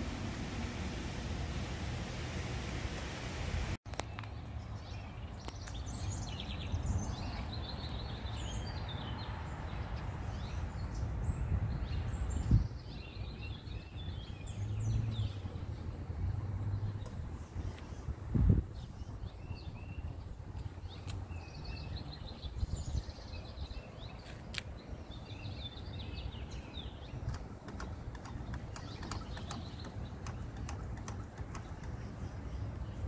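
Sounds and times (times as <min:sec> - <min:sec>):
birds chirping: 0:18.8 - 0:33.0.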